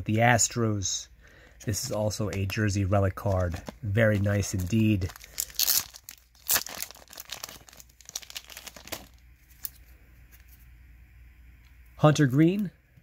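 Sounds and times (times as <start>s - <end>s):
plastic packaging crinkling: 1.7s - 9.8s.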